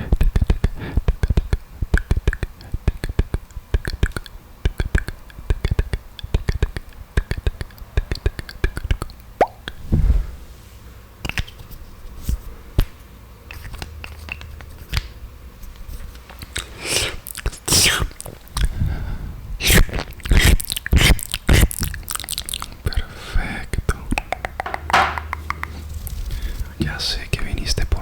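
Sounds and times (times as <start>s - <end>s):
lip smacks: 0.2s - 9.8s, 11.2s - 11.8s, 12.8s - 18.7s, 19.6s - 25.8s
tongue clicks: 0.2s - 9.8s, 11.2s - 11.7s, 13.5s - 15.1s, 16.4s - 18.7s, 19.6s - 23.0s, 23.7s - 25.8s
saliva pops: 9.4s - 9.8s.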